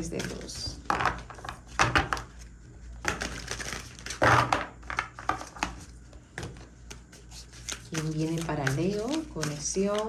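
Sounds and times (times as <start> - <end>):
cards being shuffled: 3.0 - 10.0.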